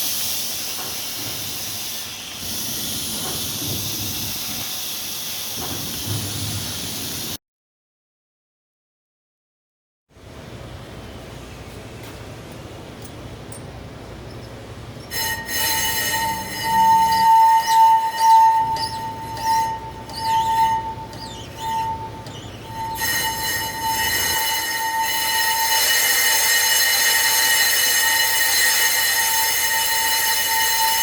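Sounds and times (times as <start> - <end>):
high-pitched brake squeal: 14.3 - 31.0.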